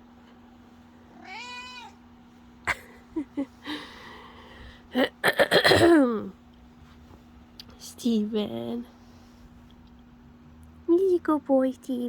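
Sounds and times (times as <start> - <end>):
cat meowing: 1.2 - 2.0.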